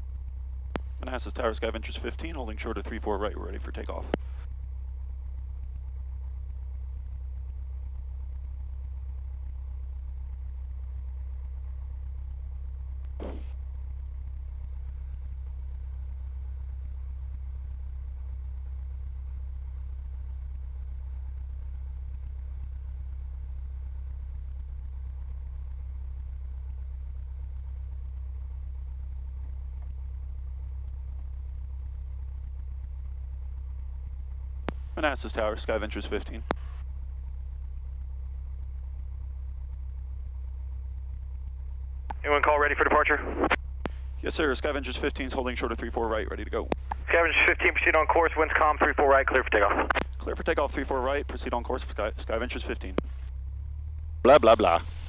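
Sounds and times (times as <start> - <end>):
propeller engine idling drone: 0.0 - 55.0.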